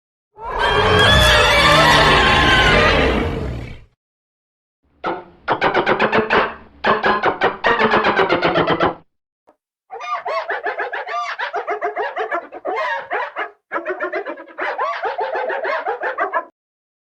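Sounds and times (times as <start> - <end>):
creature chattering and chirping: 5.0 - 9.0, 9.9 - 16.1.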